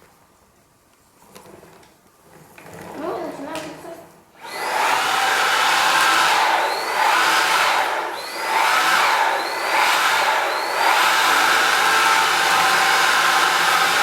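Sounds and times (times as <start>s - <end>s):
cordless vacuum cleaner running: 4.4s - 14.0s.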